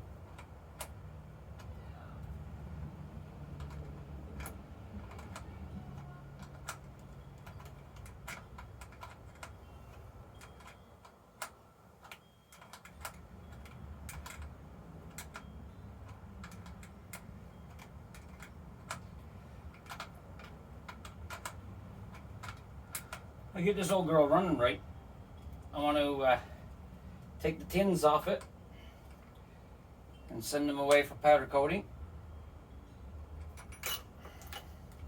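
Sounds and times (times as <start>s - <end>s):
small tools clicking and tapping: 3.2s - 23.3s.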